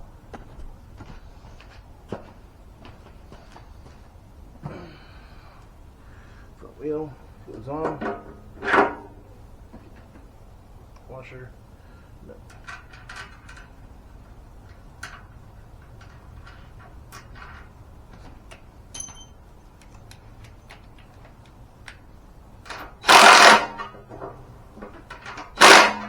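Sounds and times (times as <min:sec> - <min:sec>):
small metal clicks and taps: 0:18.4 - 0:22.0.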